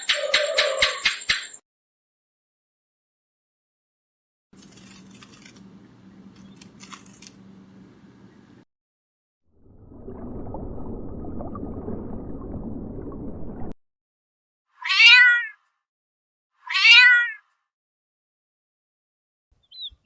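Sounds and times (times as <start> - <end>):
cat meowing: 14.8 - 15.6, 16.6 - 17.4.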